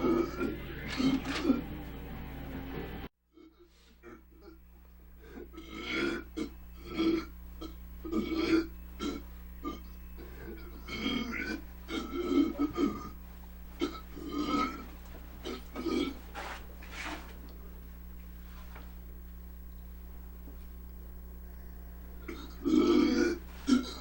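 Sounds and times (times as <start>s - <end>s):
man burping: 0.0s - 1.6s, 3.3s - 4.6s, 5.3s - 16.2s, 22.2s - 24.0s
low electrical hum: 0.0s - 24.0s.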